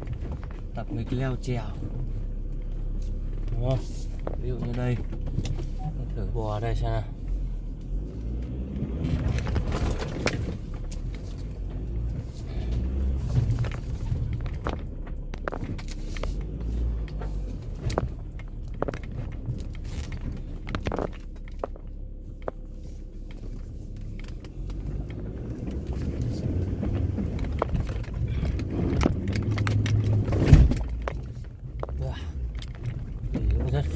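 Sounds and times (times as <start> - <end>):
off-road vehicle engine running: 0.0 - 33.9.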